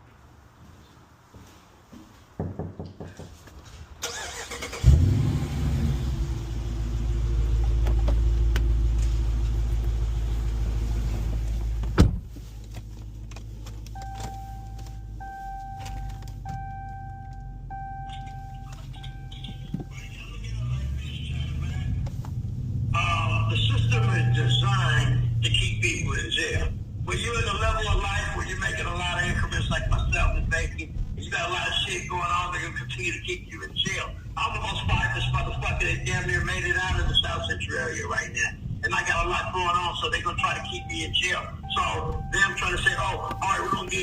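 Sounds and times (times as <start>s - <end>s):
car engine starting and idling: 4.0s - 44.0s
dashboard warning chime beeps: 13.9s - 20.5s, 23.3s - 25.9s, 40.0s - 44.0s.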